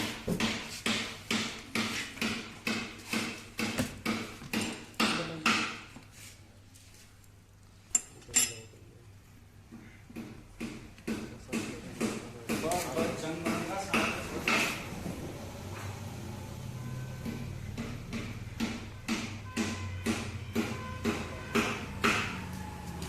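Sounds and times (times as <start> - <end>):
hammer blows on metal: 17.2 - 22.5.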